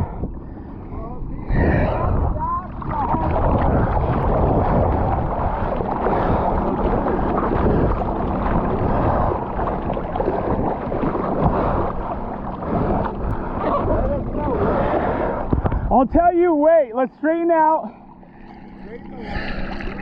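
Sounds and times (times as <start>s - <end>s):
wind rumbling on microphone: 0.0s - 16.4s
engine running: 0.0s - 20.0s.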